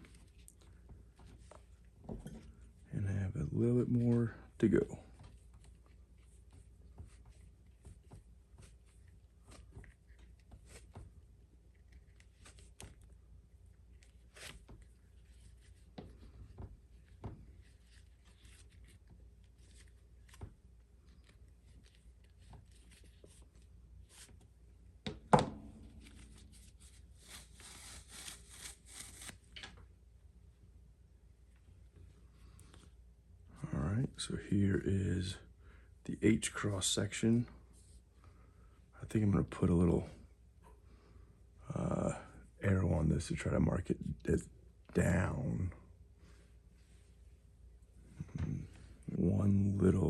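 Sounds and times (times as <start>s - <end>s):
soft rubs and small clicks: 0.0s - 2.8s, 5.1s - 24.8s
sharp knock: 25.1s - 26.2s.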